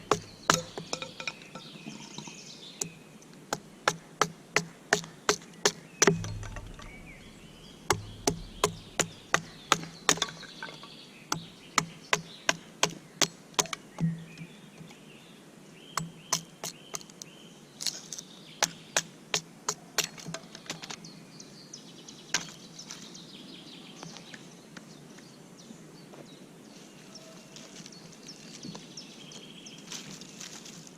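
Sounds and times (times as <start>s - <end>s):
sharp knocks: 0.0s - 1.3s, 3.5s - 13.0s
birds chirping: 0.0s - 19.0s.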